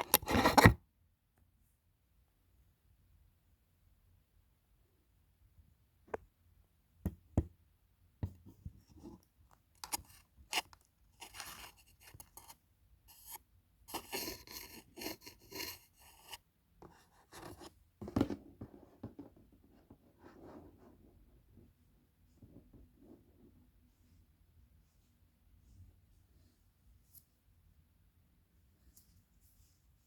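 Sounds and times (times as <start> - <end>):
crinkly plastic scratching: 9.8 - 12.5.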